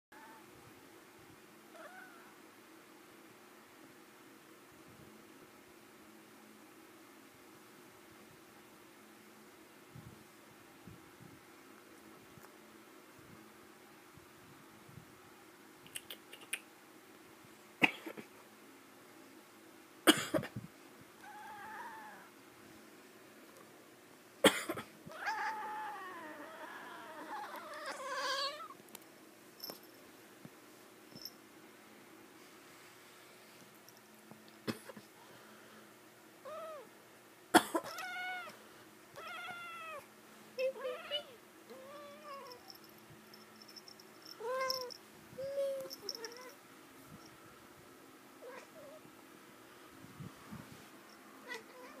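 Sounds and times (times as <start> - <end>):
cat meowing: 21.2 - 22.3, 25.1 - 28.8, 39.2 - 40.1
cat warbling yowl: 21.2 - 22.3, 25.1 - 28.7.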